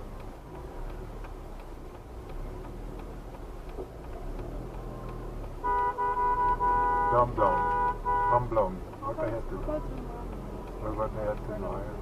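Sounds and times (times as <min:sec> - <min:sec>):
engine and road hum: 0:00.0 - 0:12.0
turn signal clicking: 0:00.0 - 0:12.0
car horn: 0:05.6 - 0:08.7.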